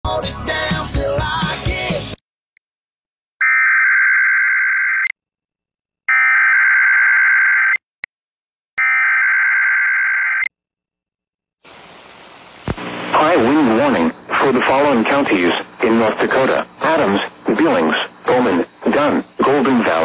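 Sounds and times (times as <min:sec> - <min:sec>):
music: 0:00.0 - 0:02.2.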